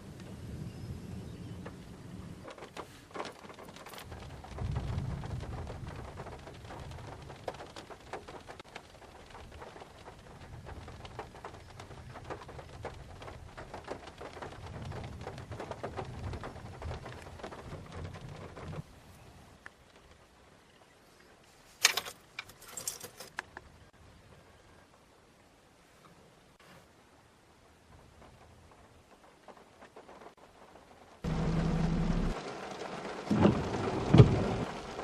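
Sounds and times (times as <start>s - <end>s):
thunder rumbling: 0.0s - 18.9s, 27.7s - 35.0s
rain drops ticking: 0.0s - 21.0s, 27.0s - 35.0s.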